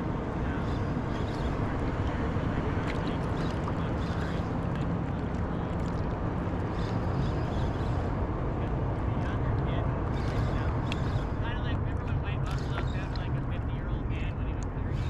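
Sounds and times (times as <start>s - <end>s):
surf water sloshing: 0.0s - 9.4s
faint splashy ticks: 2.8s - 7.1s.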